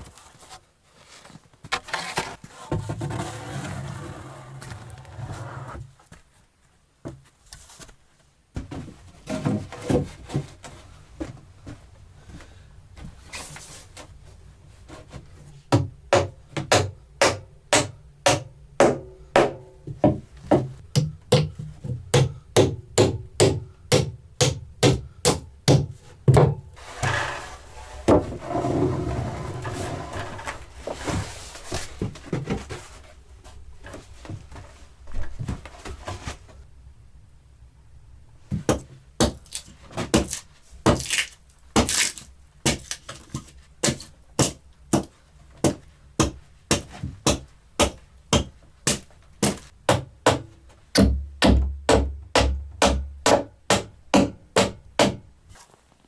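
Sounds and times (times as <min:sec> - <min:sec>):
tool striking wood: 0:15.8 - 0:27.4, 0:45.7 - 0:55.2.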